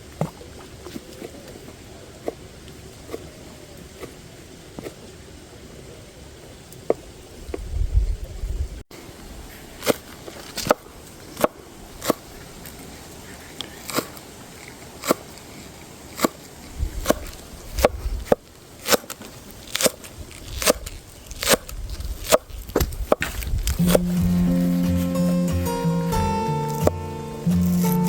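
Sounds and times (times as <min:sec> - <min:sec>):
wind rumbling on microphone: 0:07.2 - 0:09.6, 0:16.6 - 0:18.4, 0:20.2 - 0:24.4.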